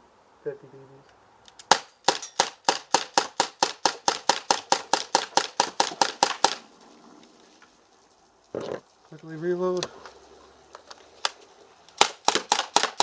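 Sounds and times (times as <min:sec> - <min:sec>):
airsoft gun rapid shots: 0:01.7 - 0:06.6, 0:12.0 - 0:13.0.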